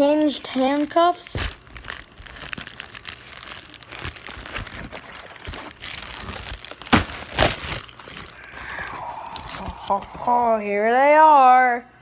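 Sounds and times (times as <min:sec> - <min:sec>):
loud packaging crackles: 0:00.0 - 0:10.6
packaging crinkling and rustling: 0:00.0 - 0:10.6.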